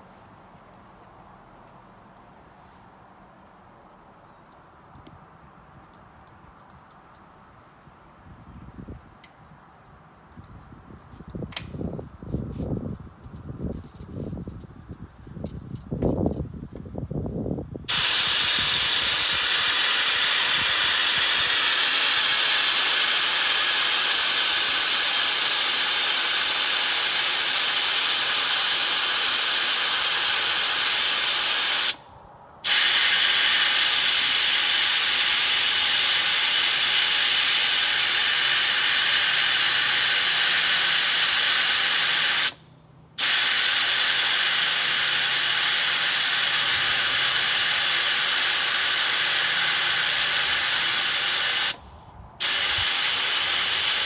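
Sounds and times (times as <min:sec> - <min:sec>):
air hissing from tire valve: 0:11.2 - 0:16.4, 0:17.8 - 0:42.6, 0:43.2 - 0:54.0.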